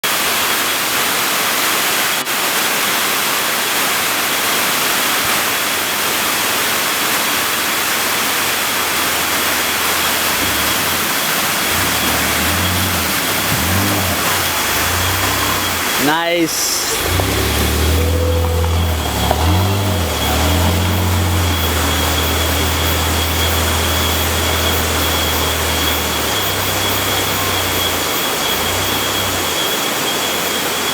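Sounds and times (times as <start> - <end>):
river water rushing: 0.1 - 30.9
car engine running: 5.6 - 30.9.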